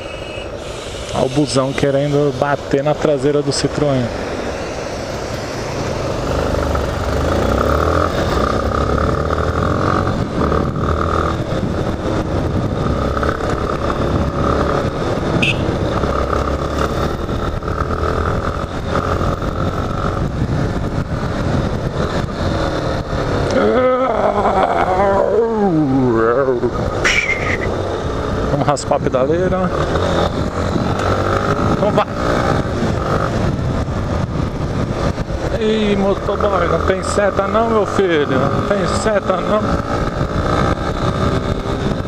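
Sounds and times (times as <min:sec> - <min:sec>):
wind noise: 0:00.0 - 0:42.0
motorcycle engine running: 0:04.0 - 0:25.6.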